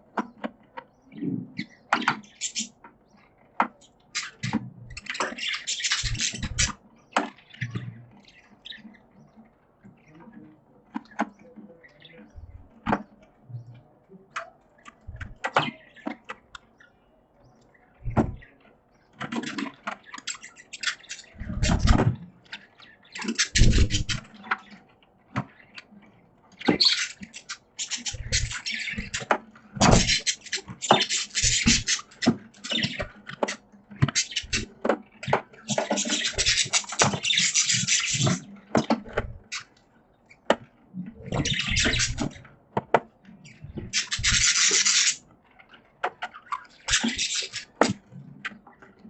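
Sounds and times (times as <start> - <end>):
budgies chattering: 0.0 - 42.6, 43.2 - 49.0
low thumps: 18.0 - 18.4.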